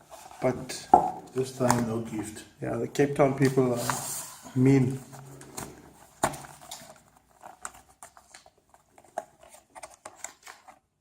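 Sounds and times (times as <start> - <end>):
packaging clicks taps and rustles: 5.4 - 10.9.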